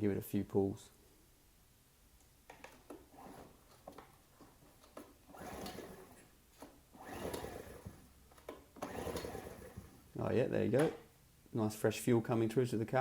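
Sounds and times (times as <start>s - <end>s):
generator recoil starter pulls: 4.8s - 10.2s
engine cranking without firing: 5.2s - 10.2s.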